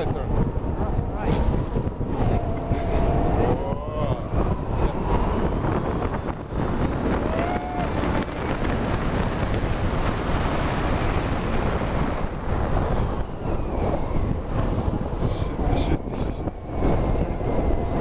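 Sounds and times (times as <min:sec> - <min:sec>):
wind roaring over microphone: 0:00.0 - 0:18.0
gliding tone: 0:00.9 - 0:14.5.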